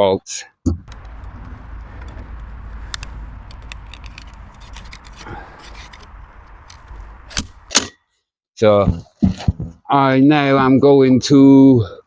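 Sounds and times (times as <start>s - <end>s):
steady low rumble: 0.8s - 7.7s
handling clicks and scrapes: 0.9s - 7.9s.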